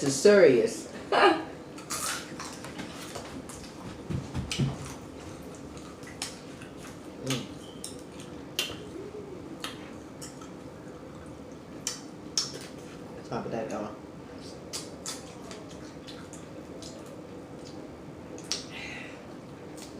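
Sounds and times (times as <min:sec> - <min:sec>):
mouth smacking: 0:06.0 - 0:12.8.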